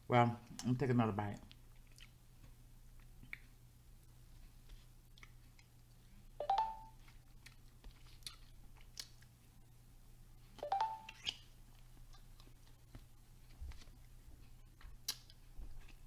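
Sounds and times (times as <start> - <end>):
chewing and mouth clicks: 1.4 - 3.6, 4.4 - 6.1, 7.0 - 9.4, 11.1 - 13.9, 14.7 - 16.0.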